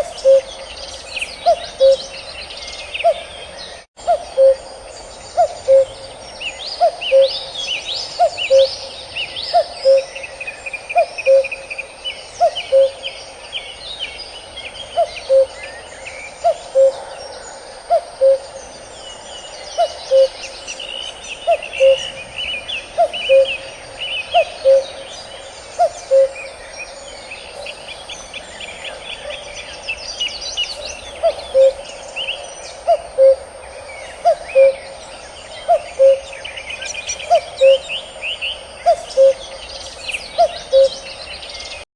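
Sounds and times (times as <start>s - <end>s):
cuckoo calling: 0.0s - 4.7s, 5.3s - 6.1s, 6.8s - 13.1s, 14.9s - 17.0s, 17.9s - 18.6s, 19.8s - 26.6s, 30.7s - 33.5s, 34.1s - 35.0s, 35.6s - 38.1s, 38.8s - 41.2s
small birds chirping and trilling: 0.0s - 41.9s.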